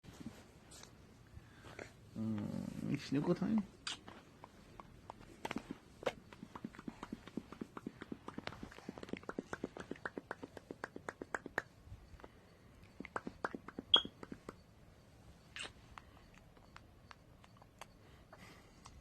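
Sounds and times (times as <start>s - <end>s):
baby making clicking noises: 6.4s - 11.7s.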